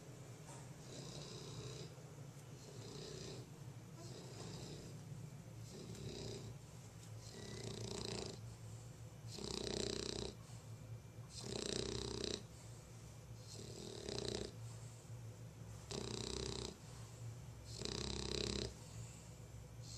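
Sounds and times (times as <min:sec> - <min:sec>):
dog snoring: 0:00.8 - 0:02.0, 0:02.6 - 0:05.0, 0:05.6 - 0:06.6, 0:07.2 - 0:10.7, 0:11.3 - 0:12.8, 0:13.4 - 0:15.0, 0:15.8 - 0:19.9.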